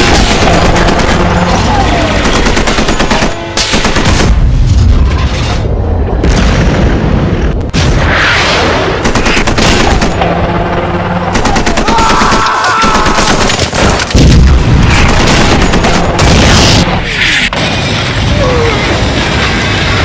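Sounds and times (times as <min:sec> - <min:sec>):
machine-gun fire: 0:00.0 - 0:04.5, 0:08.9 - 0:10.5, 0:11.2 - 0:16.9
gunshots: 0:00.0 - 0:05.6, 0:06.2 - 0:10.4, 0:11.2 - 0:18.4
loud boom: 0:06.2 - 0:09.0.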